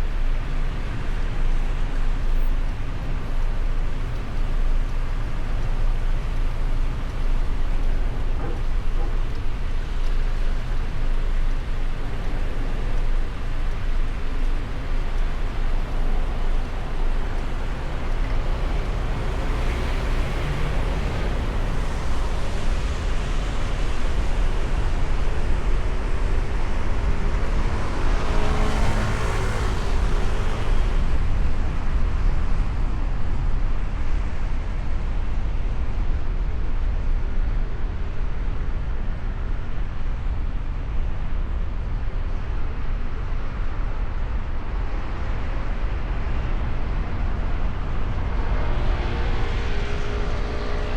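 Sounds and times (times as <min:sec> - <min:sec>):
road and engine rumble: 0:00.0 - 0:50.9
vehicle passing close by: 0:27.8 - 0:31.1, 0:48.1 - 0:50.9.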